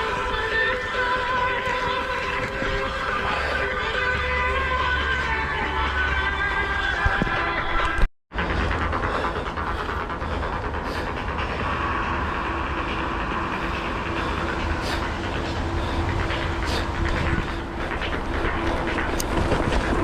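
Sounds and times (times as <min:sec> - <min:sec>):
bike tyre and wind noise: 0:00.0 - 0:20.0
bike rattles: 0:14.8 - 0:20.0.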